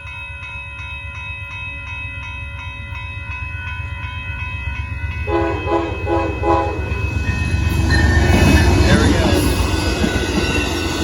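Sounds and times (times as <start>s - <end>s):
crossing bell ringing: 0.0s - 11.0s
locomotive rumble: 5.2s - 11.0s
train horn blasts: 5.3s - 7.1s.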